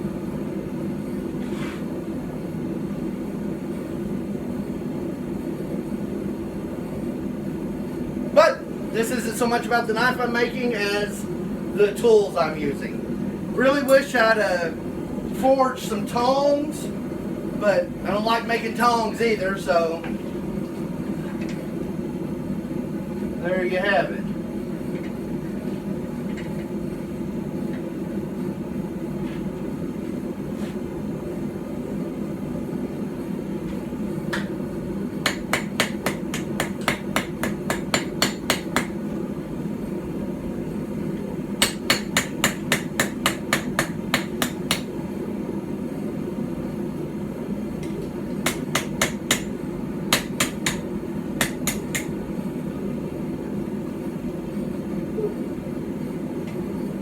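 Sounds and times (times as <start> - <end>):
steady low hum: 0.0 - 57.0
hammer striking steel on anvil: 35.2 - 39.0, 41.6 - 44.9, 48.4 - 52.1.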